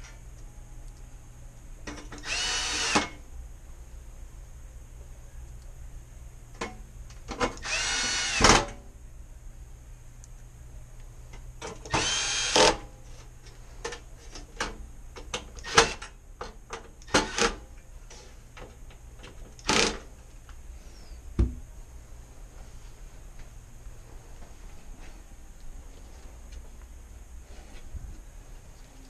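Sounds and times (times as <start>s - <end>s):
power drill running: 2.2s - 3.1s, 7.6s - 8.5s, 11.9s - 12.8s
dull thump: 21.4s - 21.6s.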